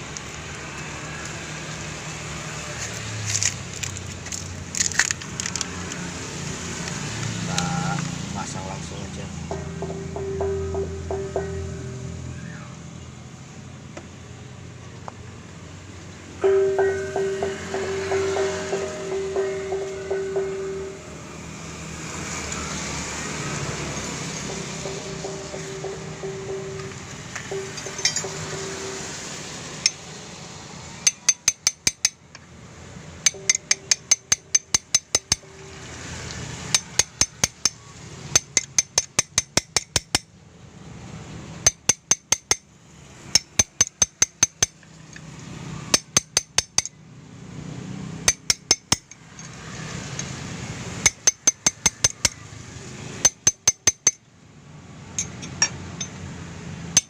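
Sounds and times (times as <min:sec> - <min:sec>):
hammer tapping on metal: 0:09.5 - 0:12.0, 0:16.4 - 0:21.4, 0:23.6 - 0:30.0, 0:31.0 - 0:32.4, 0:33.2 - 0:35.9, 0:36.7 - 0:40.3, 0:41.6 - 0:42.7, 0:43.3 - 0:44.8, 0:45.9 - 0:47.0, 0:48.3 - 0:49.2, 0:51.0 - 0:52.4, 0:53.2 - 0:54.2, 0:55.2 - 0:56.2.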